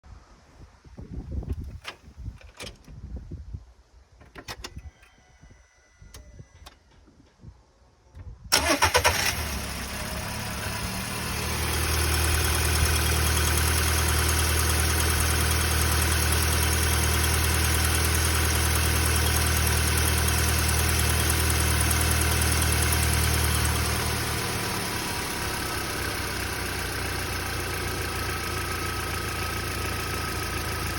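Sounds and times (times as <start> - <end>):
car engine idling with rattle: 9.4 - 30.9.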